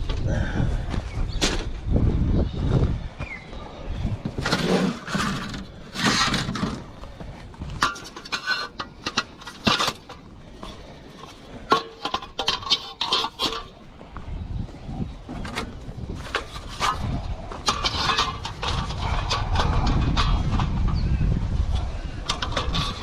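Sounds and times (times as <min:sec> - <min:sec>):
hard objects clinking and scraping: 0:04.3 - 0:13.9, 0:15.4 - 0:21.0, 0:21.8 - 0:23.0.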